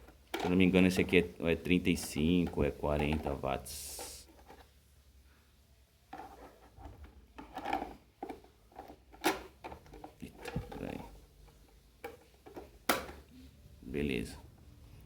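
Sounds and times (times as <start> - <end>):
plastic clicks and knocks: 0.0 - 1.1, 2.0 - 3.5, 6.1 - 13.3
hands rubbing plastic: 0.0 - 4.9, 6.1 - 13.4.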